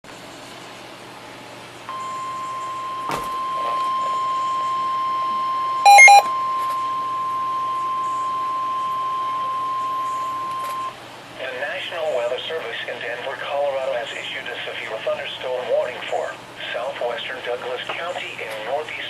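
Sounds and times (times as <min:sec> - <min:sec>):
steady warning alarm tone: 0:01.9 - 0:06.3
multi-tone beep: 0:05.9 - 0:06.3.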